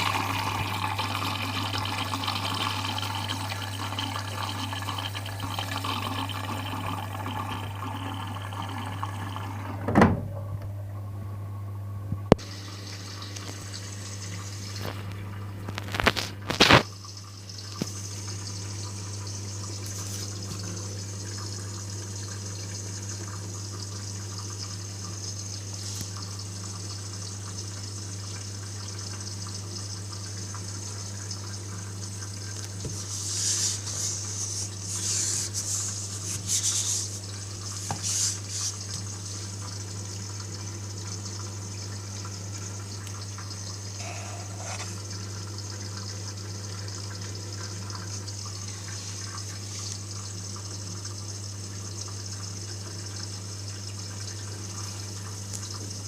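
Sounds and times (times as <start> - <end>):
water rushing into washing machine: 0.0 - 11.5, 12.1 - 56.0.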